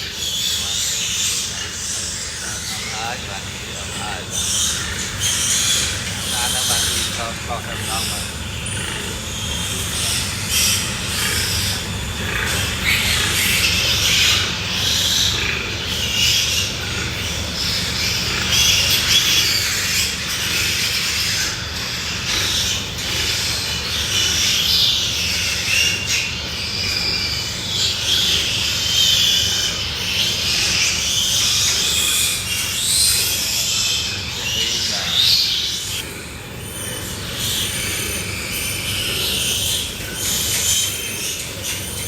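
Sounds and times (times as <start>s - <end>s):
low steady hum: 0.0s - 42.0s
pigs squealing: 0.0s - 42.0s.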